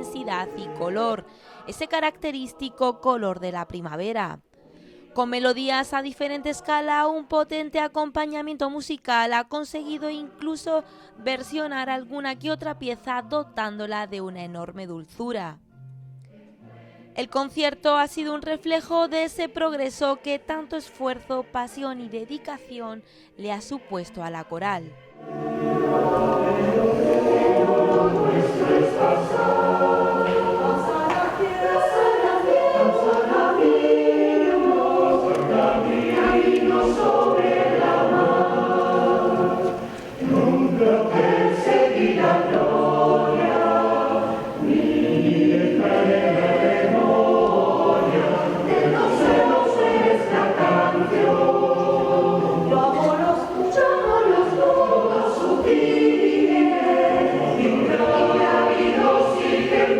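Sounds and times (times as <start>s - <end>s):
choir singing sustained chords: 0.0s - 3.6s, 19.3s - 59.9s.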